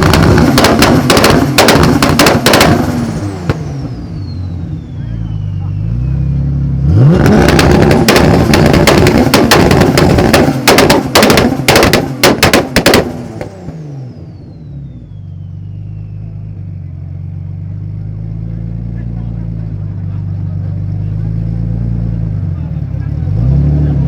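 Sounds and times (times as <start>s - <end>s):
exhaust pops and bangs: 0.0s - 4.0s, 7.2s - 13.8s
car engine revving: 0.0s - 14.9s, 15.9s - 24.0s.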